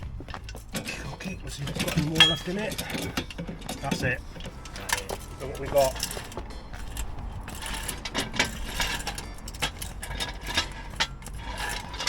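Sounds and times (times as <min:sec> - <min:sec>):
metallic clicks and knocks: 0:00.0 - 0:12.0.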